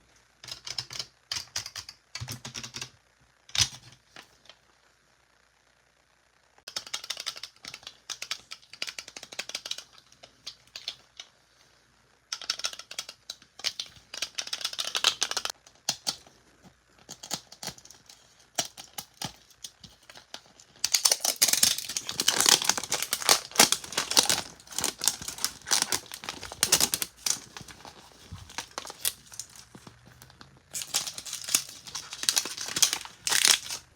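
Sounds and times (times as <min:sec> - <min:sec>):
plastic pieces clicking: 0:17.0 - 0:33.9
packaging crinkling and rustling: 0:18.8 - 0:33.9.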